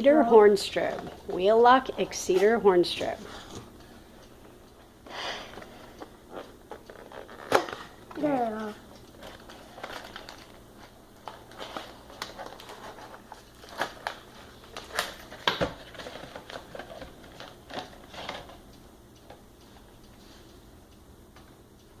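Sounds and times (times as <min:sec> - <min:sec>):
packaging clicks and rustles: 0:09.2 - 0:18.6.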